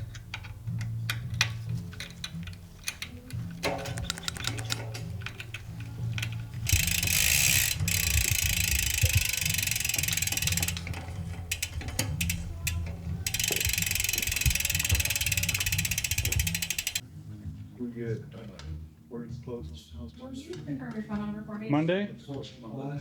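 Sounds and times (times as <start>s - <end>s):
bicycle freehub ticking: 0.0s - 17.0s
mechanical clicks: 0.0s - 17.0s.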